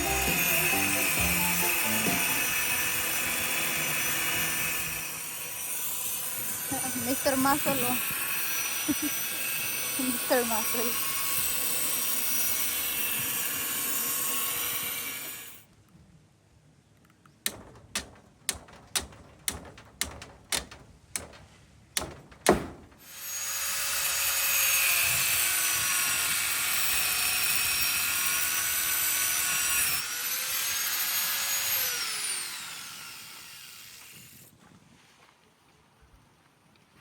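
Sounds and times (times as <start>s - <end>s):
handheld power tool whining: 0.0s - 15.7s, 22.0s - 34.5s
sharp knocks: 17.5s - 23.0s.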